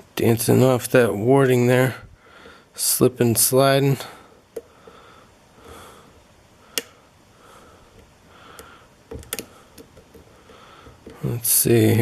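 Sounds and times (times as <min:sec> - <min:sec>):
breathing through nose: 0:04.1 - 0:11.0.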